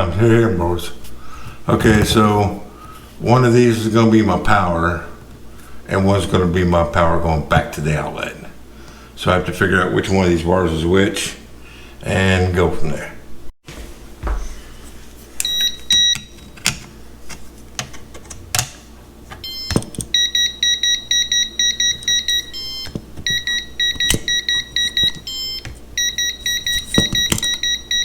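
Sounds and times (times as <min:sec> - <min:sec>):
voltage tester beeping: 0:15.4 - 0:16.6, 0:19.4 - 0:28.0
wires clicking: 0:21.8 - 0:27.7.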